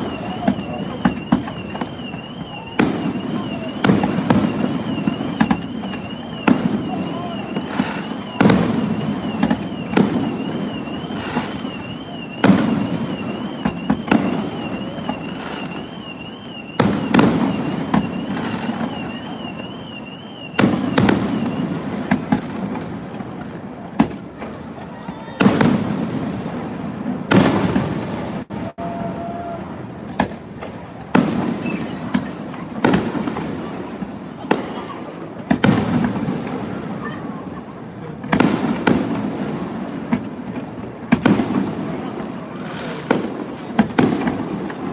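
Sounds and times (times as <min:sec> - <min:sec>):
fireworks bangs with echo: 0:00.0 - 0:44.9.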